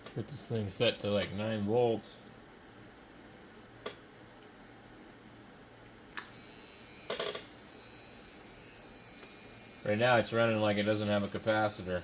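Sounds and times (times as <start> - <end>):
tattoo machine buzzing: 6.2 - 12.0.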